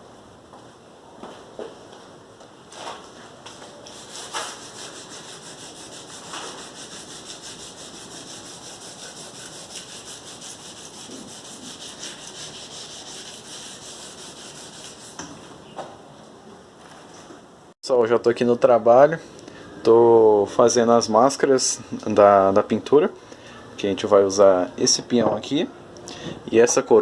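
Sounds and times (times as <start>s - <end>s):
hand sanding paint: 3.8s - 15.3s.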